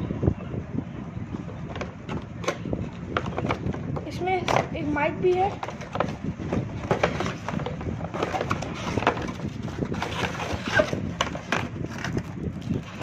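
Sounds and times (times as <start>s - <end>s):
cardboard packaging rustling: 5.4s - 13.0s.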